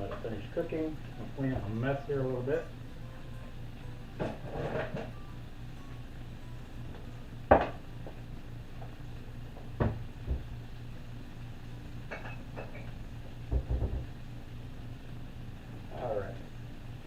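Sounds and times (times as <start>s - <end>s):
steady low hum: 0.0s - 17.0s
pots and pans clinking: 12.0s - 13.0s.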